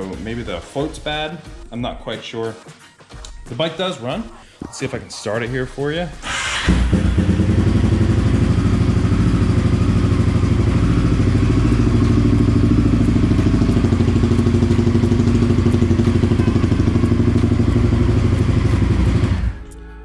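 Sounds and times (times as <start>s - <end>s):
motorcycle engine idling: 6.2s - 19.6s.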